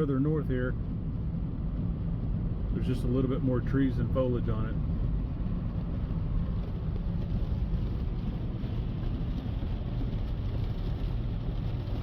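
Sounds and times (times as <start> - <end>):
road and engine noise in car: 0.0 - 12.0.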